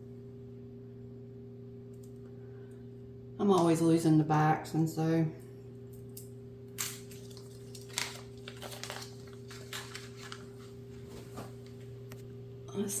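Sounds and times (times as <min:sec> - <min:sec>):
low electrical hum: 0:00.0 - 0:13.0
packaging rustling and crinkling: 0:07.1 - 0:11.9.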